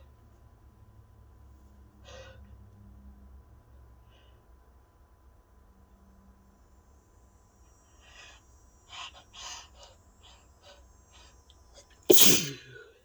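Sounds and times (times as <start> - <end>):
sharp in-breaths and sniffs: 7.9 - 11.4, 12.1 - 12.7
loud sneeze: 12.1 - 12.7.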